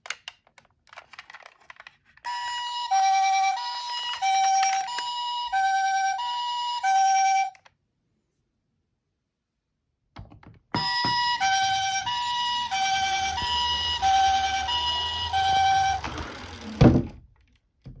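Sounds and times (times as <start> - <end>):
two-tone ambulance siren: 2.3 - 7.6, 10.8 - 16.9.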